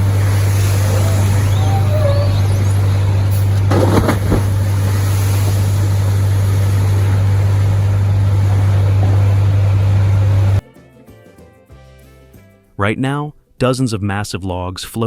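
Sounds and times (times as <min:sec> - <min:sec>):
large engine humming: 0:00.0 - 0:10.6.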